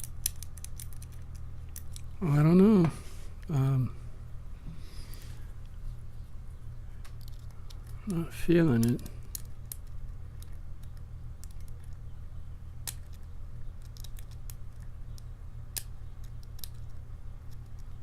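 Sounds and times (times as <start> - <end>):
lock pick metallic clicks: 0.0 - 2.2, 8.7 - 12.0, 12.8 - 18.0
steady low hum: 0.0 - 18.0.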